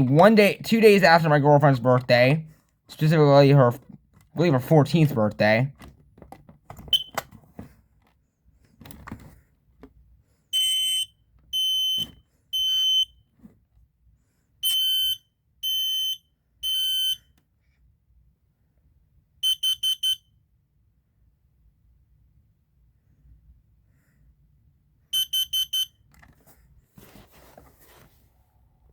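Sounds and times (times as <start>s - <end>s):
smoke alarm high-pitched beeps: 6.9s - 7.2s, 10.6s - 13.2s, 14.6s - 17.2s, 19.4s - 20.4s, 25.1s - 26.0s.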